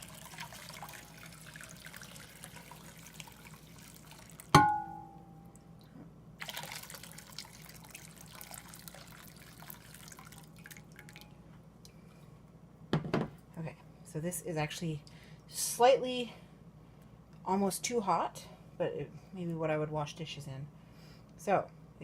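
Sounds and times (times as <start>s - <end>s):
ringing clink of hard vessel: 4.6s - 5.2s
water pouring and swishing in basin: 6.4s - 11.2s.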